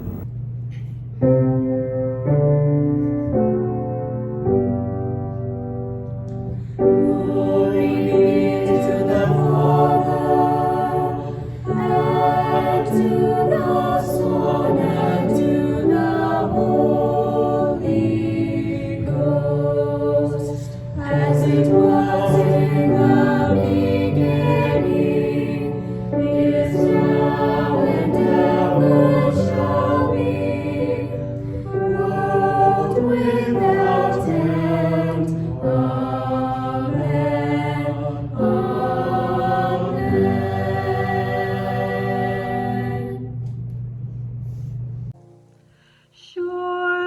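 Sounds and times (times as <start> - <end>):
choir singing a hymn: 6.5 - 43.4.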